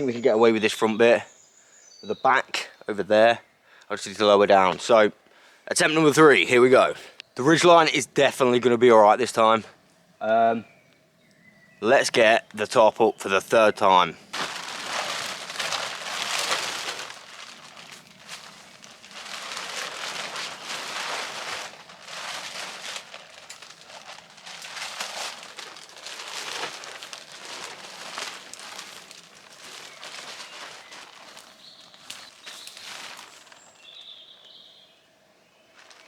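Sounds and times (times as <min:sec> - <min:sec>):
tarp rustling and crinkling: 0:14.2 - 0:34.7, 0:35.6 - 0:36.0.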